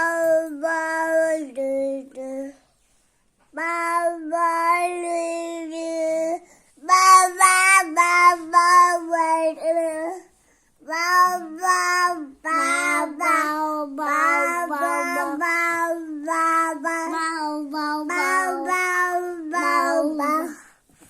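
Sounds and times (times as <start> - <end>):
child vocalizing in sing-song tones: 0.0 - 2.6, 3.5 - 20.7.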